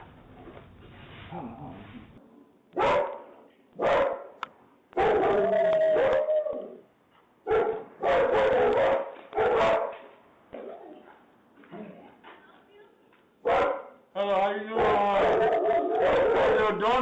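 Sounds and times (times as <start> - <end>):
dog barking: 2.8 - 4.4, 5.0 - 6.8, 7.5 - 10.8, 13.4 - 14.0, 14.8 - 16.8.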